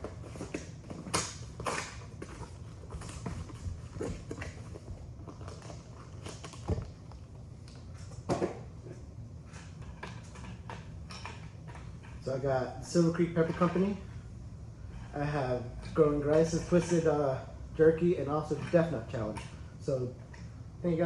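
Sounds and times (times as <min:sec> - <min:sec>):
package handling knocks and rustles: 0:00.0 - 0:07.3
low steady hum: 0:00.0 - 0:21.0.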